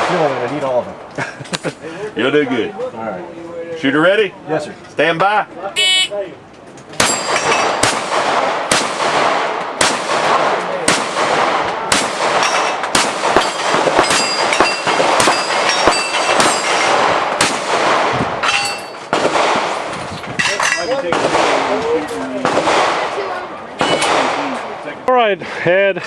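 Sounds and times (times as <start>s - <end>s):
pistol shots: 7.0s - 19.9s, 21.0s - 21.8s, 22.4s - 23.2s, 23.8s - 24.7s
steel plates ringing: 13.4s - 17.0s, 18.4s - 19.1s.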